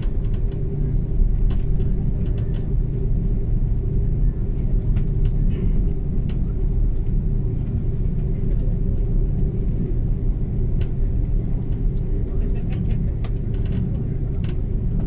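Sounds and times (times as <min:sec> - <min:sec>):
aircraft cabin rumble: 0:00.0 - 0:15.0.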